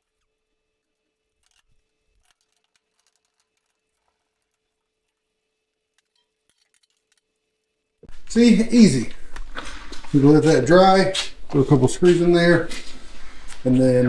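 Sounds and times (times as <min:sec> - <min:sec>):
steady low hum: 0:08.1 - 0:14.0.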